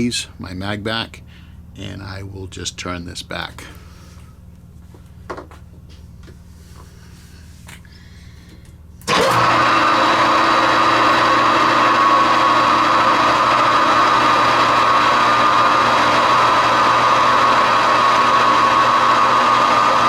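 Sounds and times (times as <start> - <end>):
metal lathe humming: 9.1 - 20.0.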